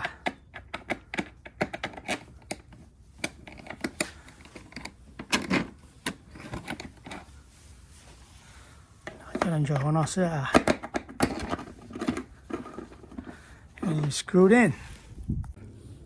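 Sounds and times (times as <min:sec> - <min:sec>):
plastic parts and tools clicking: 0:00.0 - 0:07.3, 0:09.0 - 0:14.2.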